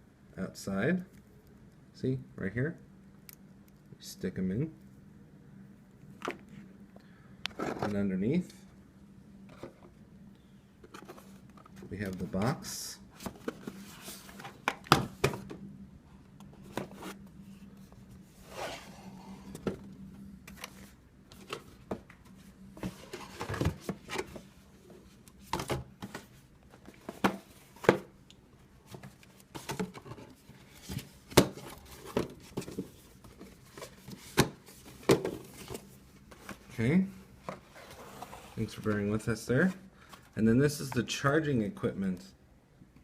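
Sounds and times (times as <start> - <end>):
faint low hum: 0.0 - 43.0
cardboard and plastic packaging handled: 10.8 - 15.6, 16.5 - 28.1, 28.7 - 41.0.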